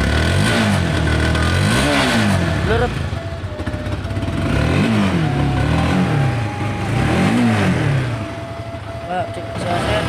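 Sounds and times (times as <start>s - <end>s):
motorcycle engine revving: 0.0s - 10.0s.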